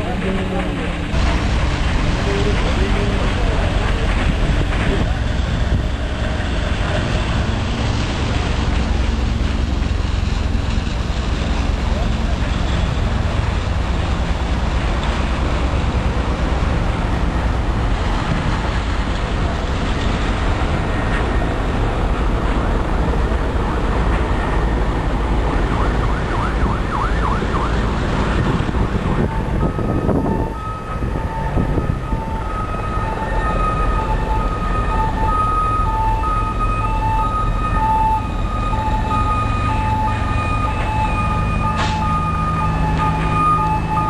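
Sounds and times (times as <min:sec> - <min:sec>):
traffic and wind rushing: 0:00.0 - 0:44.0
two-tone emergency siren: 0:24.0 - 0:44.0.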